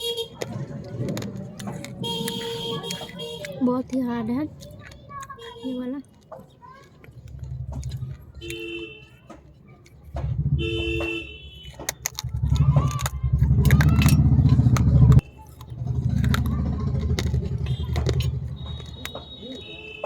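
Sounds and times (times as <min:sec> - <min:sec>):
vehicle horn: 0:00.0 - 0:00.4, 0:02.0 - 0:03.6, 0:08.4 - 0:09.1, 0:10.4 - 0:11.9, 0:17.5 - 0:20.0
heavy engine rumble: 0:00.0 - 0:06.0, 0:06.6 - 0:19.8
sharp crunching clicks: 0:00.1 - 0:20.0.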